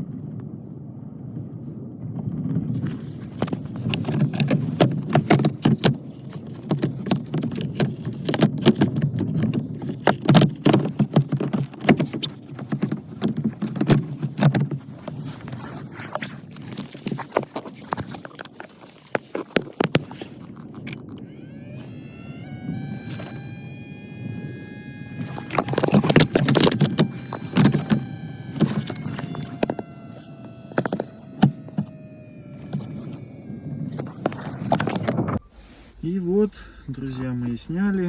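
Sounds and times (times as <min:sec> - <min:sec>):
clicks and knocks of plastic parts: 0:02.8 - 0:21.2, 0:25.1 - 0:32.0.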